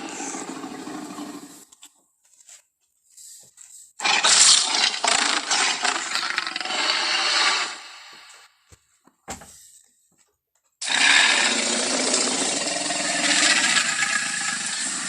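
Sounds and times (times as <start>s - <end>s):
harsh raspy dinosaur roar: 4.0s - 7.9s, 10.8s - 15.0s.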